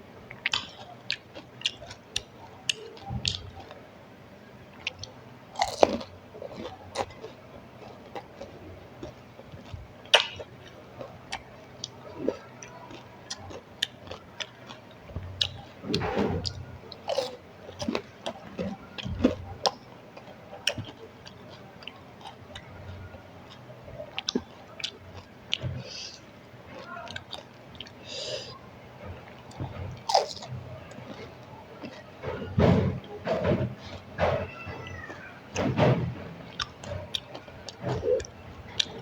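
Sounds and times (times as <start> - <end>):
wet mouth clicks: 10.1 - 10.5.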